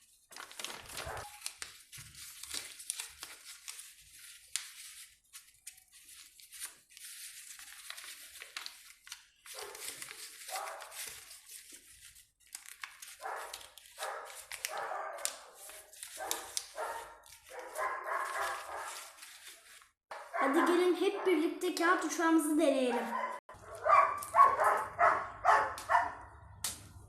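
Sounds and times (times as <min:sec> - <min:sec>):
paper crackling and rustling: 0:00.0 - 0:20.0.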